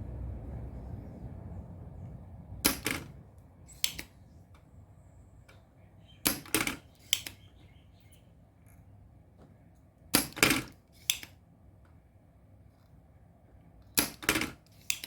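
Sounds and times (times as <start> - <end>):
sharp clicks of hard objects: 2.6 - 4.6, 6.2 - 7.4, 10.1 - 12.0, 13.8 - 15.0.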